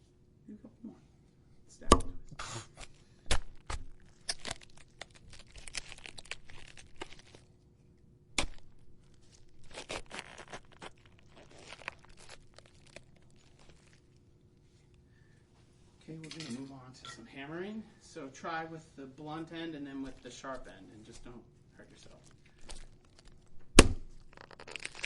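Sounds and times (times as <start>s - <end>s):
cabbage crunching and tearing: 2.6s - 7.6s, 8.3s - 14.3s, 20.1s - 25.0s.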